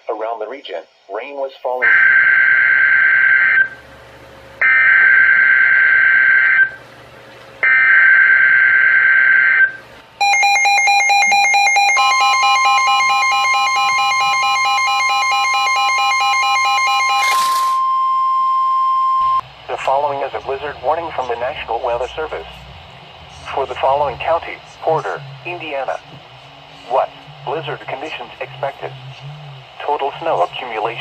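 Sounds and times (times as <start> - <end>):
steady warning alarm tone: 1.8 - 6.8, 7.6 - 31.0
pulsing alert beeping: 10.2 - 18.1
buzzy digital data bursts: 17.2 - 17.8.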